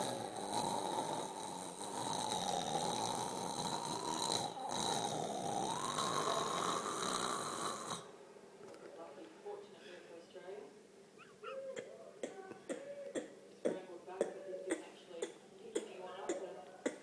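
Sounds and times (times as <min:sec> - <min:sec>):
woman snoring: 0:00.0 - 0:08.1.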